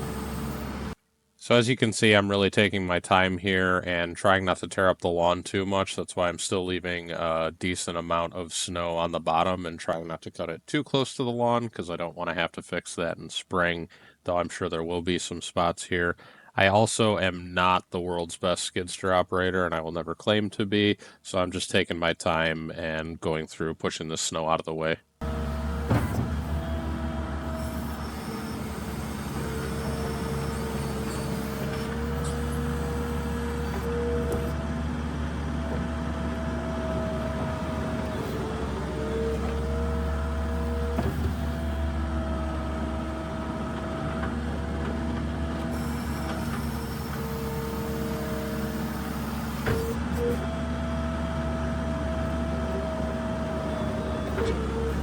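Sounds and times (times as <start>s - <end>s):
diesel engine running: 0.0s - 1.0s, 25.2s - 55.0s
machine whine: 0.0s - 1.0s, 25.2s - 41.9s, 45.7s - 50.4s.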